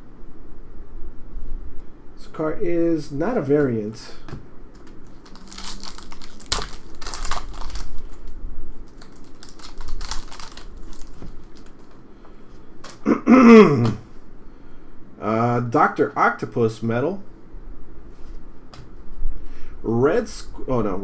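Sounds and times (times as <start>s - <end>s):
cards rustling and clicking: 4.7s - 8.3s, 8.9s - 12.0s.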